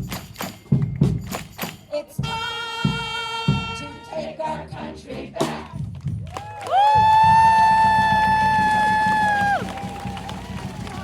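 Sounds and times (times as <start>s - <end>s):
choir singing: 2.9s - 5.8s.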